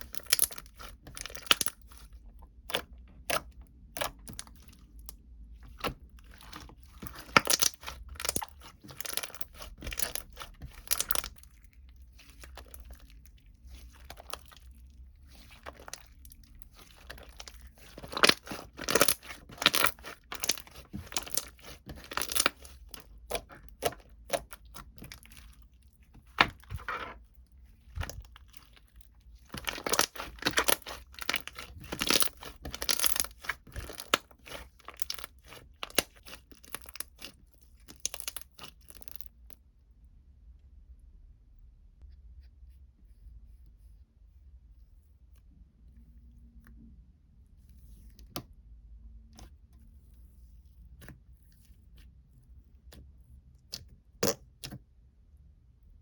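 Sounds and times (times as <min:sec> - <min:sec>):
crinkling crunching and tearing: 0:00.0 - 0:39.6.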